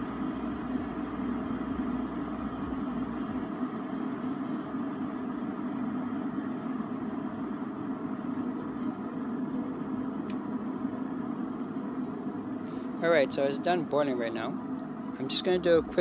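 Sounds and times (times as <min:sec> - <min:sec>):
electric kettle boiling: 0:00.0 - 0:12.0.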